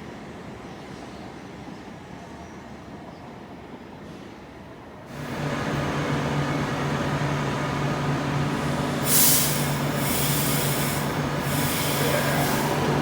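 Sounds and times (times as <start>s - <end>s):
train engine hum: 3.3s - 13.0s
air hissing: 5.1s - 13.0s.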